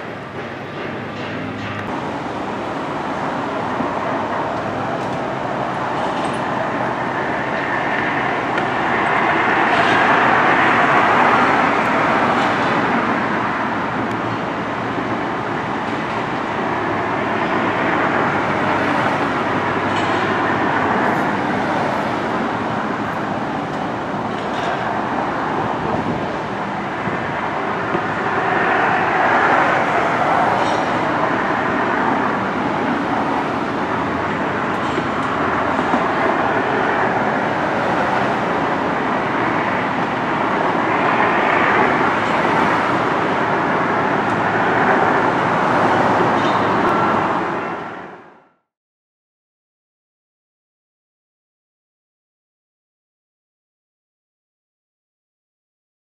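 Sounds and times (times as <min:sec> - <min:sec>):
moving vehicle rushing noise: 0:00.0 - 0:48.5.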